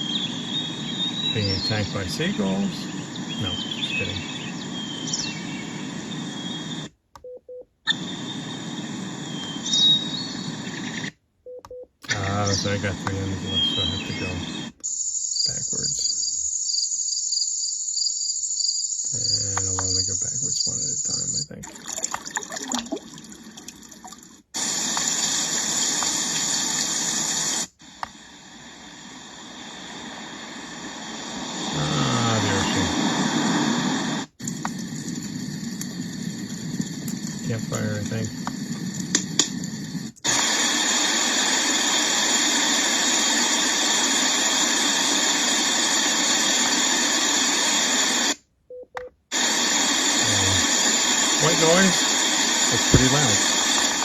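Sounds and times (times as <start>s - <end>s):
hissing rush of water-like noise: 1.3s - 4.5s, 28.4s - 48.4s, 49.3s - 54.0s
bird calls: 2.9s - 6.6s
ocean surf from small speaker: 50.2s - 54.0s.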